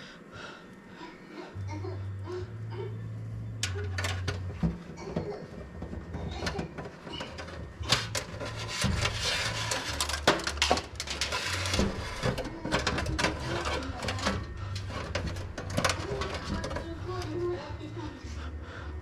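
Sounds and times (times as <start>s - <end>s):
cables and parts clicking: 3.6s - 17.6s.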